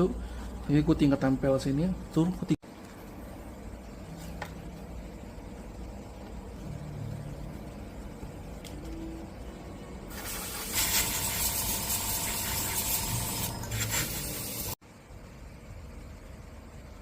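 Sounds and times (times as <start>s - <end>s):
low steady hum: 0.0s - 10.1s, 14.8s - 17.0s
spray paint hissing: 10.1s - 14.8s.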